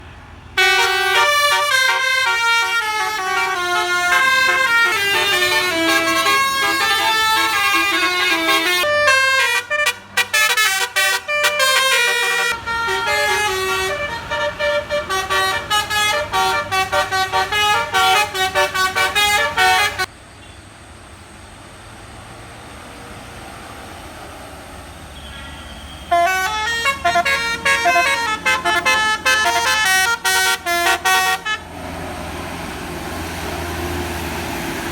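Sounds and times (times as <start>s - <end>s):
engine and road noise: 0.0s - 34.9s
multi-tone air horn tune: 0.6s - 20.1s, 25.2s - 31.7s.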